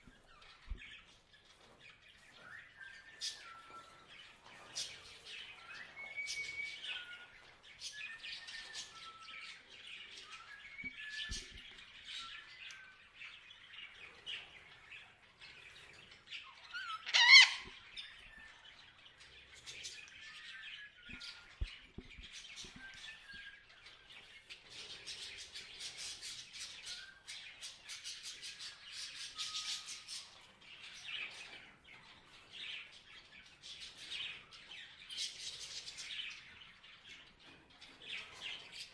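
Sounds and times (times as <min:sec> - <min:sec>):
parrots chirping and chattering: 0:04.2 - 0:38.9
parrot squawk: 0:16.8 - 0:17.7.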